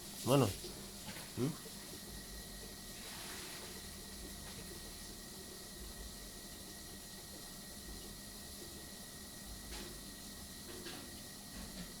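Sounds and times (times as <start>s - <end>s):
room tone hiss: 0.0s - 7.6s.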